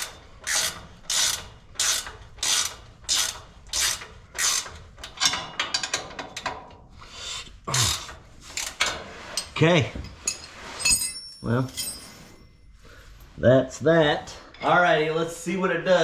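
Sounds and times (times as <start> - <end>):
ratchet wrench clicking: 0.0 - 5.2.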